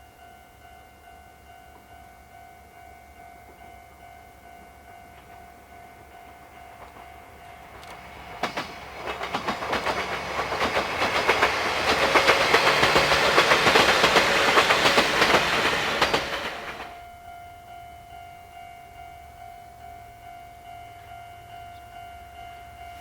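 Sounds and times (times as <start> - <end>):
crossing warning alarm ringing: 0.0 - 23.0
train wheels clacking over rail joints: 6.8 - 17.0.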